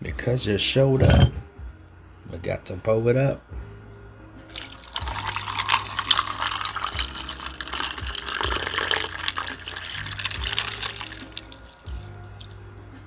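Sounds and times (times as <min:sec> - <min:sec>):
background music bass notes: 0:00.0 - 0:13.0
iced tea pouring into cup: 0:04.5 - 0:12.6.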